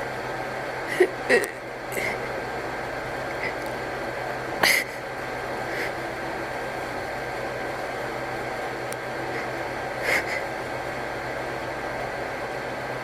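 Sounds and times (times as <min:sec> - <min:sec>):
steady background hum: 0:00.0 - 0:13.0
sharp intake of breath: 0:09.3 - 0:10.6.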